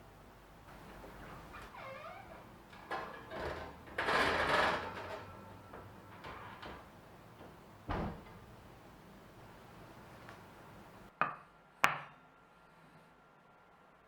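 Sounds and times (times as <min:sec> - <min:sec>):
dull knock: 0:07.4 - 0:08.4.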